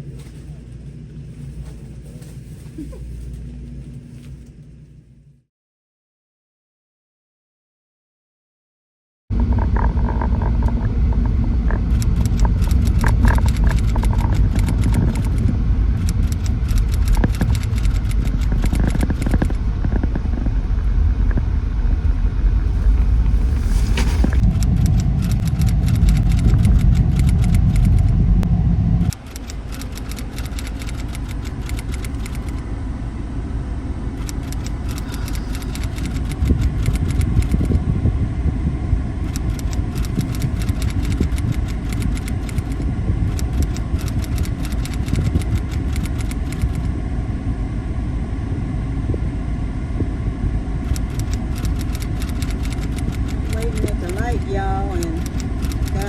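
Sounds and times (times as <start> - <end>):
car road rumble: 9.3 - 56.0
small clicks and rattles: 11.7 - 20.4, 29.1 - 32.6, 34.2 - 37.7, 39.3 - 46.9, 50.9 - 56.0.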